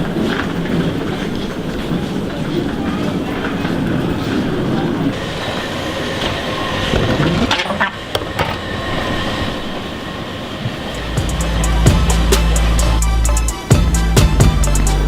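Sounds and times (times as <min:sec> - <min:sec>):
moving vehicle rumbling: 0:10.7 - 0:15.0
music with deep bass: 0:11.0 - 0:15.0.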